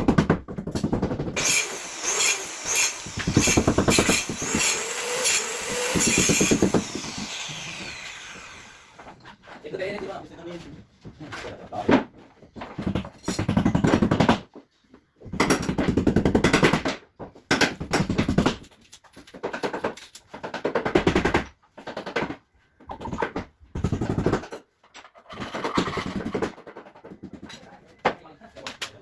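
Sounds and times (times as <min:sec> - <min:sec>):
power tool rattling on wood: 0:00.8 - 0:09.2.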